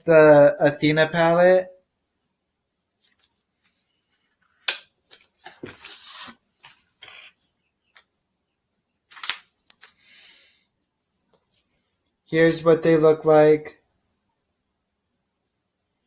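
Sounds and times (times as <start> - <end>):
packaging rustling: 5.1 - 7.3, 9.1 - 10.0.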